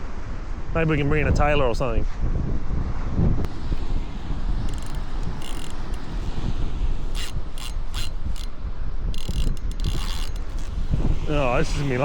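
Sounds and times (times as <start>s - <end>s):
wind on microphone: 0.0s - 12.0s
fishing reel gears whirring: 3.5s - 12.0s.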